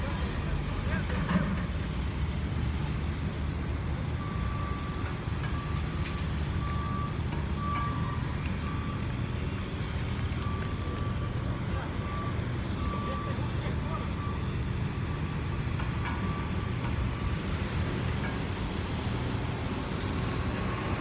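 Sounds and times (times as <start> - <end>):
reversing alarm beeping: 4.2 - 18.3.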